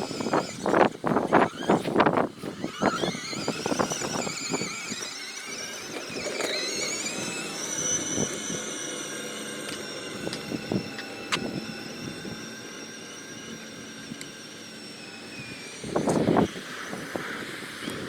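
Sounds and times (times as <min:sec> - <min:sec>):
electric motor whining: 0:00.0 - 0:18.0.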